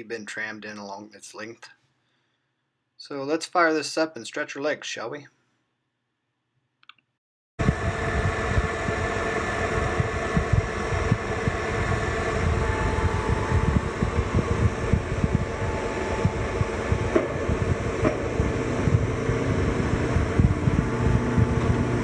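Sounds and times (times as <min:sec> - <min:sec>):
milling machine gear whine: 0:07.6 - 0:22.0.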